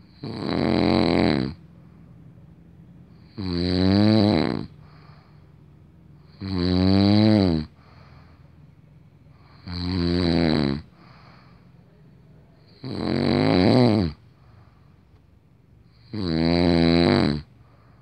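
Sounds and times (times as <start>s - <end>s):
man snoring: 0.0s - 1.6s, 3.1s - 5.3s, 6.2s - 8.2s, 9.4s - 11.5s, 12.6s - 14.2s, 15.9s - 17.6s
soft breathing: 4.7s - 6.3s, 7.7s - 9.7s, 10.8s - 12.8s, 14.2s - 15.9s, 17.4s - 18.0s.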